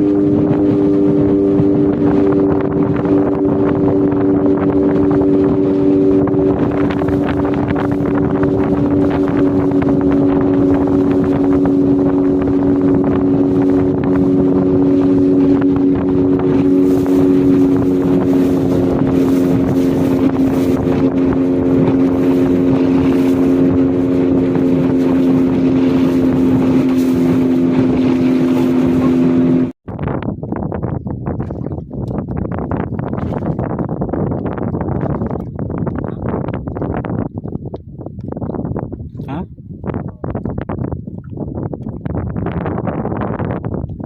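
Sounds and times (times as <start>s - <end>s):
motorboat engine humming: 0.0s - 44.0s
water noise: 0.0s - 44.0s
wind: 0.0s - 44.0s.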